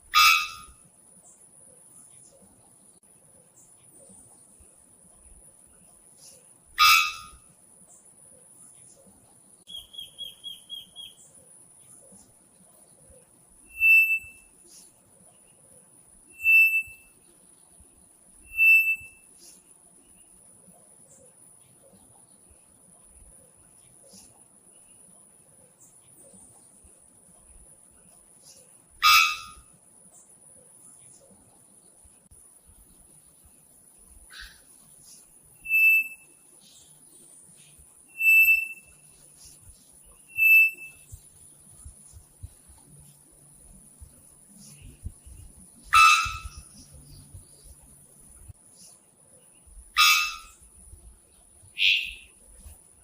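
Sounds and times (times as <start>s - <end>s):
faint bird chirps: 0.0s - 53.0s
bird whistled call: 0.1s - 0.7s, 6.8s - 7.4s, 9.7s - 11.2s, 13.7s - 14.5s, 16.3s - 17.1s, 18.4s - 19.2s, 29.0s - 29.6s, 35.6s - 36.3s, 38.1s - 39.0s, 40.3s - 41.1s, 45.9s - 46.8s, 50.0s - 50.6s, 51.8s - 52.3s.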